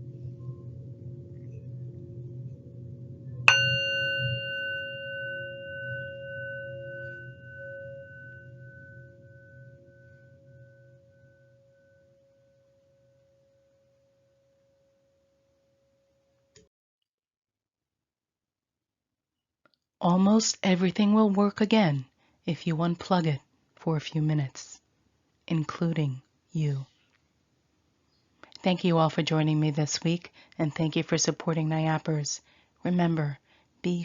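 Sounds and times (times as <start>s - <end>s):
meditation bell ringing: 3.4s - 13.0s.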